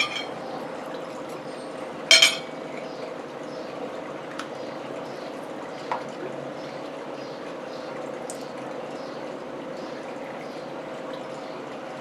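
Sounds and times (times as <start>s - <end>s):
tableware clinking: 0.0s - 0.4s, 2.1s - 2.6s.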